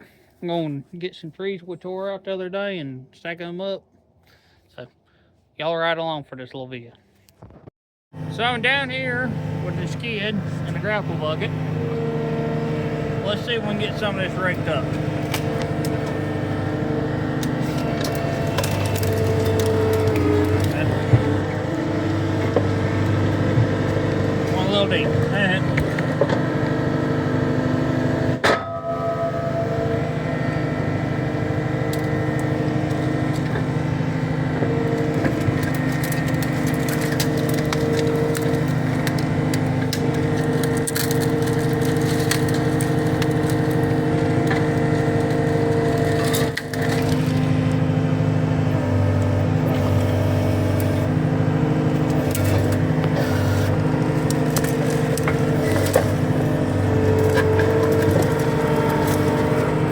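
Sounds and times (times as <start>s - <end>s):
diesel engine under load: 8.1s - 59.9s
branches cracking and snapping: 13.6s - 27.1s, 31.7s - 48.0s, 51.8s - 59.9s.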